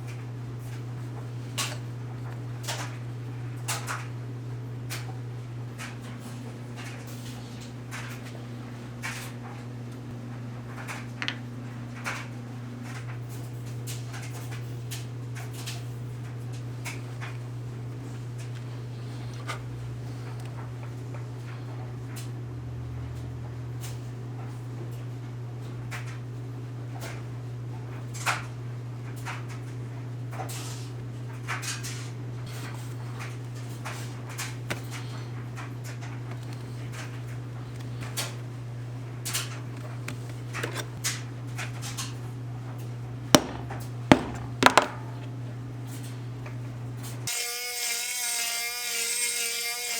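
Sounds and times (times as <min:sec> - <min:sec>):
steady low hum: 0:32.4 - 0:47.0
scratches and taps on leather: 0:43.4 - 0:44.9.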